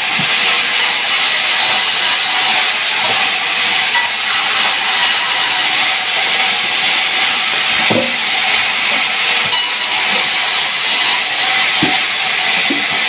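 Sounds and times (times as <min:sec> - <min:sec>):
saw cutting through log: 0:00.0 - 0:13.0.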